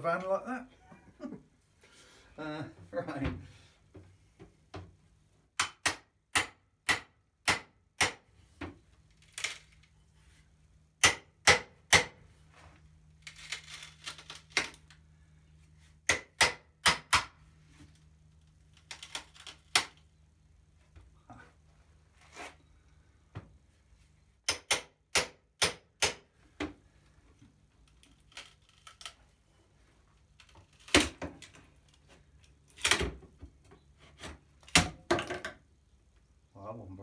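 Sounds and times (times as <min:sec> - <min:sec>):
hammer striking pry bar: 0:05.6 - 0:08.2, 0:11.0 - 0:12.2, 0:16.1 - 0:17.4, 0:24.5 - 0:26.2.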